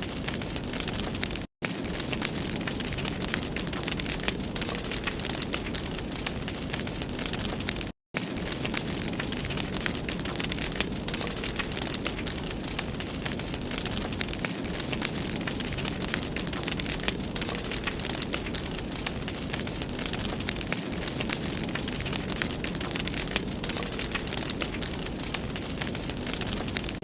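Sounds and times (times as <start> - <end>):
wood fire crackling: 0.0 - 27.0.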